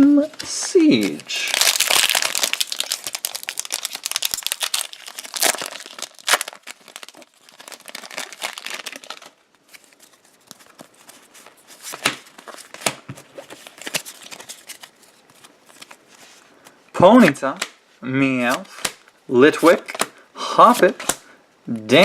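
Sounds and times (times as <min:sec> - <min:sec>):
cards rustling and clicking: 0:00.4 - 0:17.8, 0:18.4 - 0:21.2
foil wrapper crinkling and tearing: 0:00.9 - 0:16.0.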